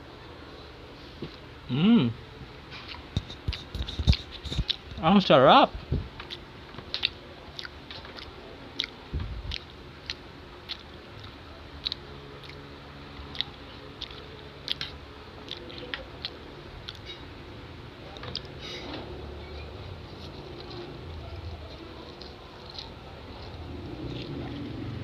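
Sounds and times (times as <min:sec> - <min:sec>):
person chewing noodles: 0:02.9 - 0:05.0, 0:06.2 - 0:17.3, 0:20.0 - 0:25.0.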